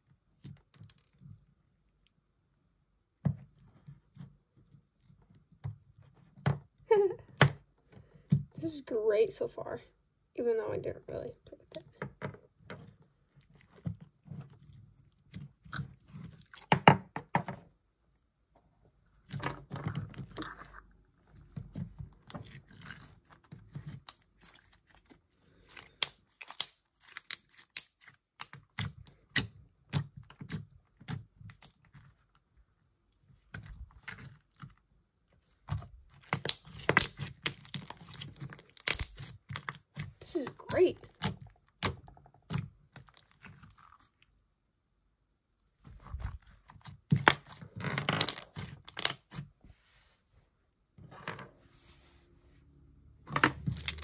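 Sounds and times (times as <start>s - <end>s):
slime sticky clicks and pops: 26.0s - 27.9s.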